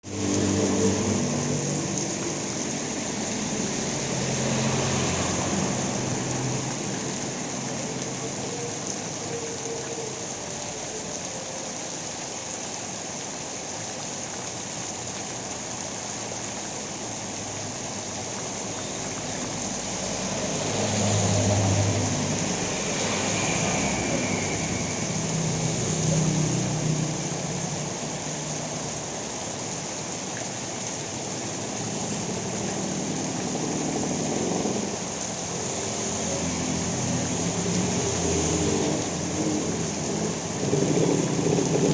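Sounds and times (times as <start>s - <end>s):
vehicle engine passing: 0.0s - 7.7s, 19.6s - 28.0s
heavy rain hiss: 0.0s - 41.9s.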